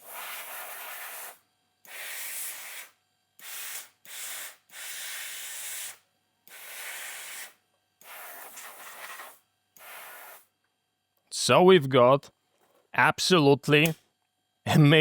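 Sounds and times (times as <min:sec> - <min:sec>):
compressed air bursts from hose: 0:00.0 - 0:10.5.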